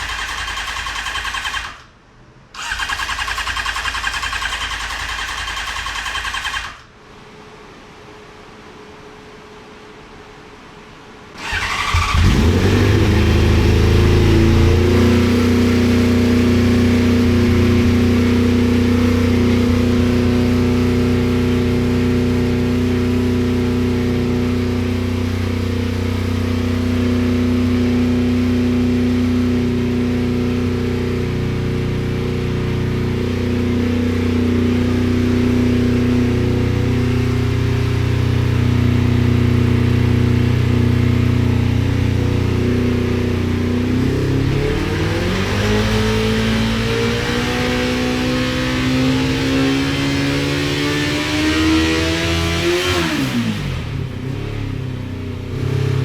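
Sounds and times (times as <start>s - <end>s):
motorcycle engine idling: 0.0s - 1.8s, 2.6s - 6.8s, 11.4s - 44.8s.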